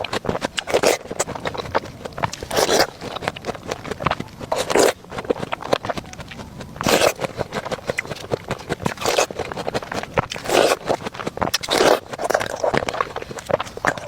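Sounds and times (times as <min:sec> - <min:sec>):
person chewing crunchy fruit: 0:00.0 - 0:14.0.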